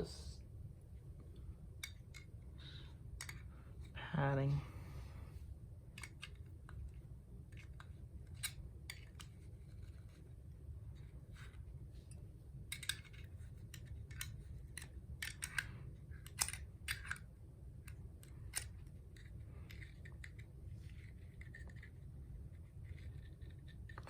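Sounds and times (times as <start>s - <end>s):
metal tool clicking and scraping: 12.7s - 17.2s.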